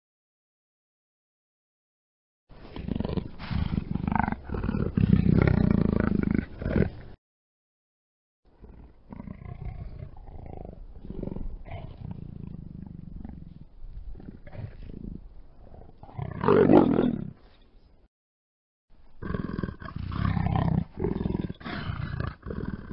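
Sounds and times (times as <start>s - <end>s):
big cat growling: 2.6s - 7.2s, 8.6s - 17.4s, 19.2s - 22.9s
big cat roaring: 2.7s - 7.1s, 8.6s - 17.4s, 19.2s - 22.9s.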